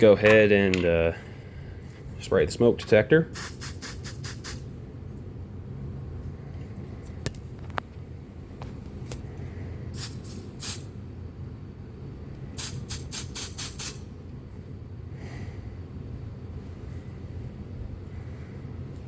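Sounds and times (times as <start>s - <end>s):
aerosol spray hissing bursts: 3.4s - 4.6s.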